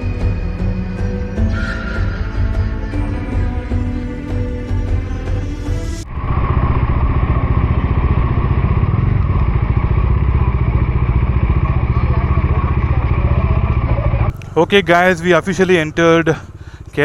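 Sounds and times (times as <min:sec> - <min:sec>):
background music: 0:00.0 - 0:06.4, 0:14.3 - 0:17.0
motorcycle engine running: 0:00.0 - 0:17.0.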